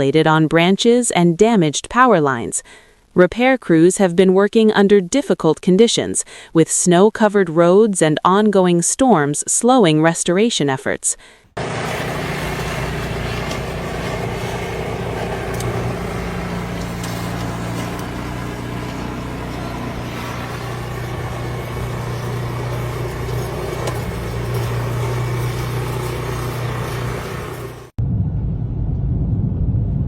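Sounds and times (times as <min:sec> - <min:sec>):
engine running steadily: 0:11.6 - 0:28.0.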